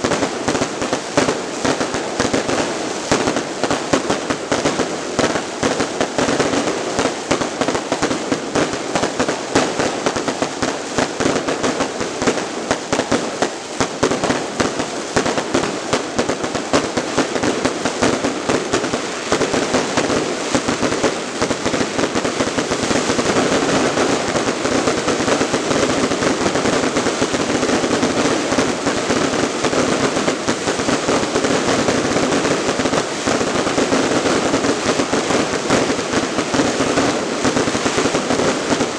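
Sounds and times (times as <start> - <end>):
fireworks bangs and crackles: 0.0 - 38.9.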